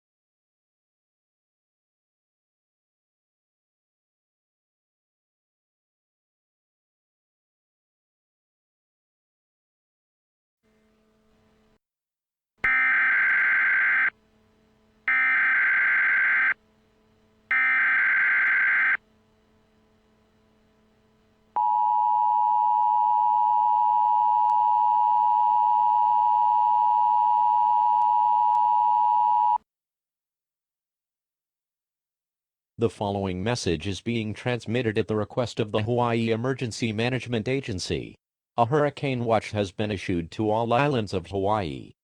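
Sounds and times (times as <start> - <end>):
digital data tone screech: 12.6 - 14.2, 15.1 - 16.6, 17.5 - 19.0
two-tone attention signal: 12.6 - 14.2, 15.1 - 16.6, 17.5 - 19.0.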